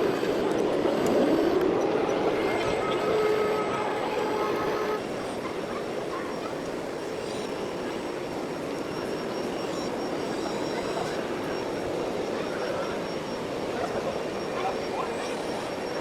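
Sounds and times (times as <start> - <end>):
motor whine: 0.0 - 5.4
steady mechanical whirr: 0.0 - 16.0.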